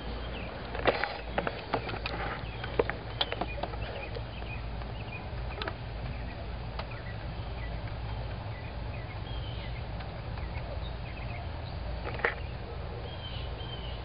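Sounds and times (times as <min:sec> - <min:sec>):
birds chirping: 0:00.0 - 0:14.0
steady low hum: 0:00.0 - 0:14.0.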